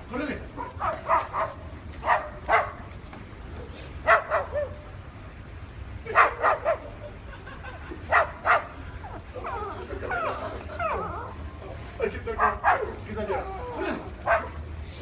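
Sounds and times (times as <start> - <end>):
dog barking: 0.6 - 2.8, 4.0 - 4.8, 6.1 - 7.0, 8.1 - 8.7, 12.4 - 13.5, 14.2 - 14.6
dog whining: 9.0 - 11.4, 13.3 - 14.6.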